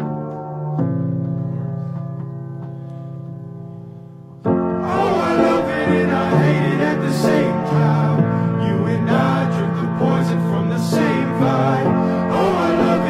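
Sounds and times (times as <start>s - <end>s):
piano-like keyboard chords: 0.0s - 13.0s
music with singing: 4.8s - 13.0s.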